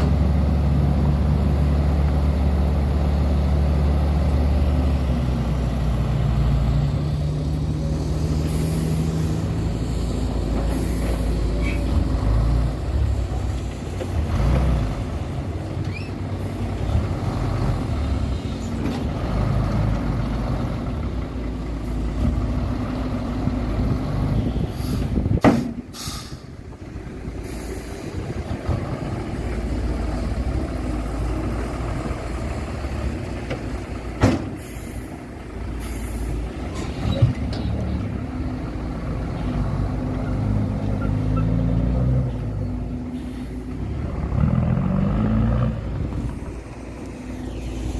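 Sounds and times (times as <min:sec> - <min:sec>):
diesel truck engines running: 0:00.0 - 0:47.9
air brake hisses: 0:24.7 - 0:26.6, 0:27.4 - 0:28.1, 0:34.5 - 0:35.2, 0:35.8 - 0:36.4.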